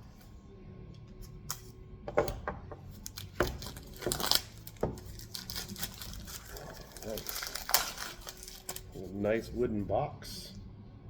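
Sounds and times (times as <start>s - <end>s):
packaging rustling: 3.0s - 9.6s.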